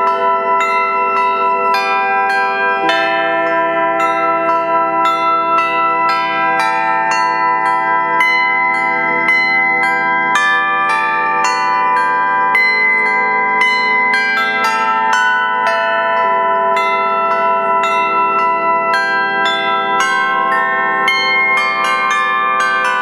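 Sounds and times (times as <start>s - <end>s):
bells ringing a melody: 0.0s - 23.0s.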